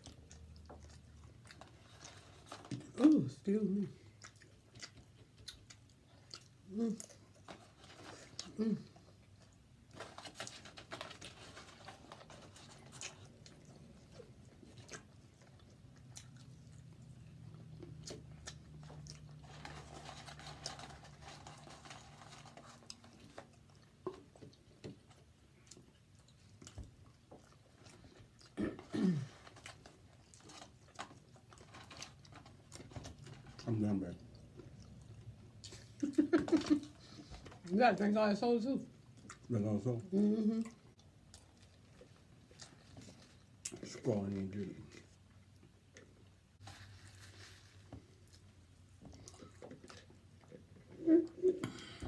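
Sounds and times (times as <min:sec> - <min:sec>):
chewing and crunching food: 0:00.0 - 0:52.0
person humming: 0:40.1 - 0:40.7.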